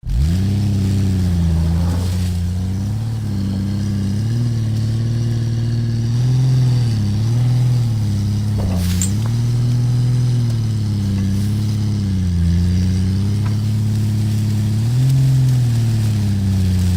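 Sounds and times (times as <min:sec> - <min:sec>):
car engine revving: 0:00.0 - 0:16.9.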